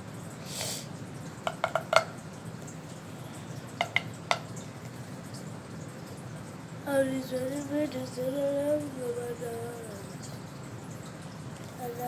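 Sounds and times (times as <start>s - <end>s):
brief hiss: 0.4s - 0.9s
fidget toy popping: 1.5s - 2.1s.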